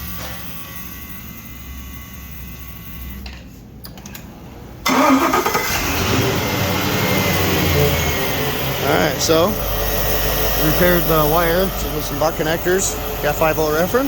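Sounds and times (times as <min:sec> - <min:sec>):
engine starting and running: 0:03.8 - 0:14.0
starter motor whine: 0:04.8 - 0:14.0.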